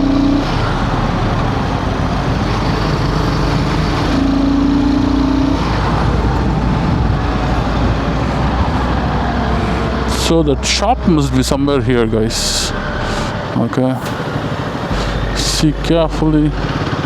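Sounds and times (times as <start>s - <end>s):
motorcycle engine running: 0.0s - 13.5s
steady tone: 0.0s - 17.0s
traffic: 0.0s - 17.0s
wind and road noise: 0.0s - 17.0s.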